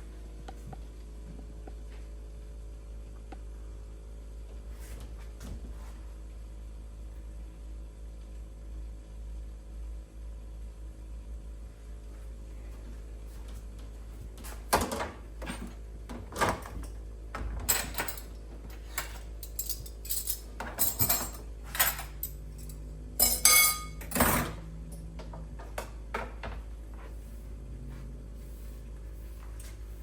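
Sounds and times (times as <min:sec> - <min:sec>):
pots and pans clattering: 0:23.2 - 0:24.5.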